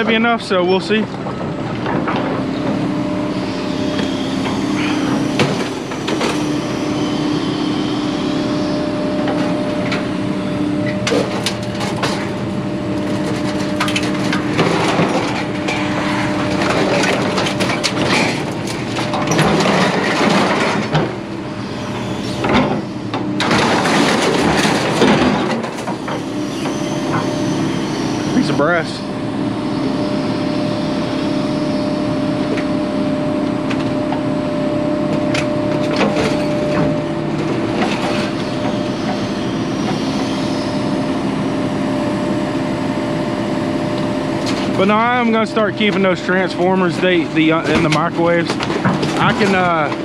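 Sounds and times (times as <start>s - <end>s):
scrap metal clanking and rattling: 4.0s - 6.7s, 10.8s - 21.4s, 23.4s - 27.4s, 44.4s - 50.0s.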